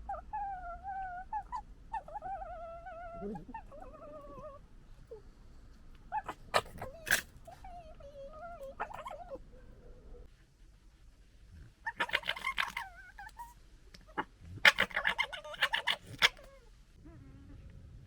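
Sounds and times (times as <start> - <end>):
foxes whining calls: 6.1 - 9.8, 11.8 - 16.7
fox harsh cries: 8.6 - 9.4, 11.8 - 13.4, 14.0 - 16.7.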